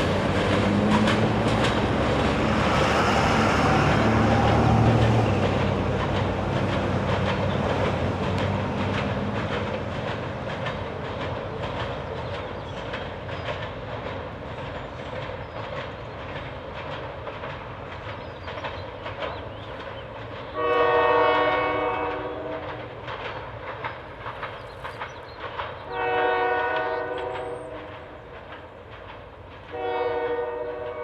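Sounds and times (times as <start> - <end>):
freight train rolling past: 0.0 - 31.0
train cars clacking over rails: 0.0 - 31.0
locomotive horn: 20.6 - 22.8, 25.9 - 28.0, 29.7 - 31.0.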